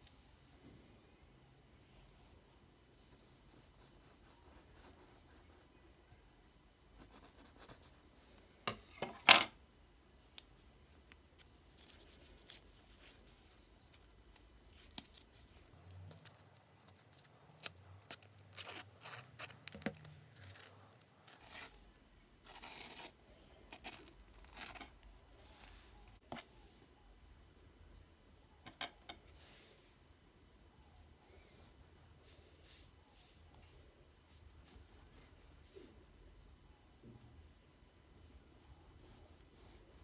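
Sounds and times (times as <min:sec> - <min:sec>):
packaging crinkling and tearing: 0:15.8 - 0:21.8.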